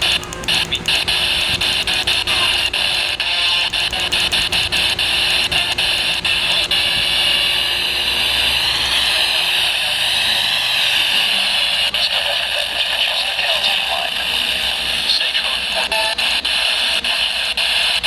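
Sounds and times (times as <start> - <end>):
quick clicks: 0.0 - 7.4
broadcast voices: 0.0 - 18.0
radio static hiss: 0.0 - 18.0.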